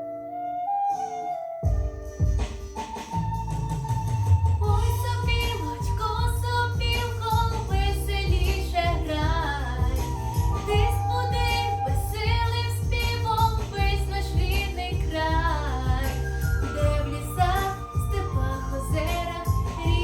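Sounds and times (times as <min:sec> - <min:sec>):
backing track with steady beat: 0:01.6 - 0:20.0
girl singing pop song: 0:04.6 - 0:20.0.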